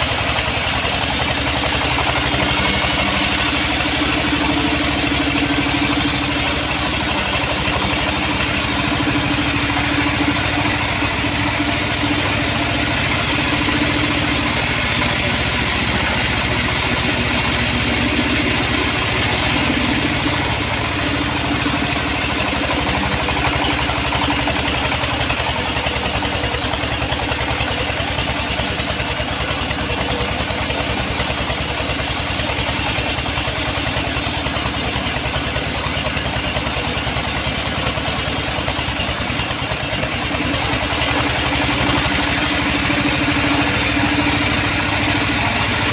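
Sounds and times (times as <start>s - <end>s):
sawmill engine pulsing: 0.0s - 45.9s
steady hum: 10.1s - 33.9s.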